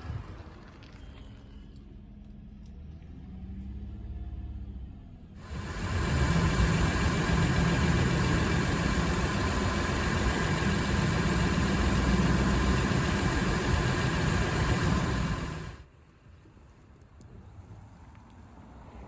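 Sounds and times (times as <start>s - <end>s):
engine idling with exhaust hiss: 5.4s - 15.8s.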